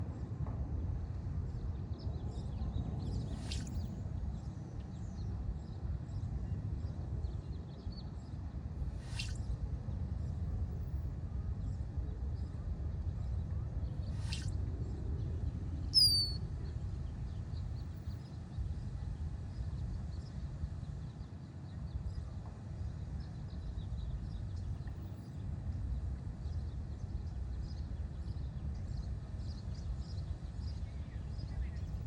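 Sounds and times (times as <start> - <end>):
faint bird chirps: 3.0 - 4.4, 8.9 - 9.4, 13.9 - 14.5, 15.9 - 16.4.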